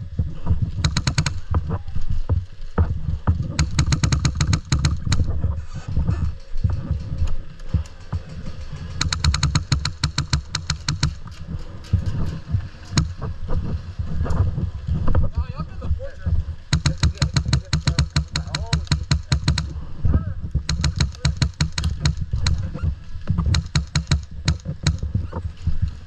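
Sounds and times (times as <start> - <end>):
airsoft gun rapid fire: 0.8 - 1.5, 3.5 - 5.3, 9.0 - 11.3, 16.7 - 19.7, 20.7 - 22.7, 23.4 - 25.1.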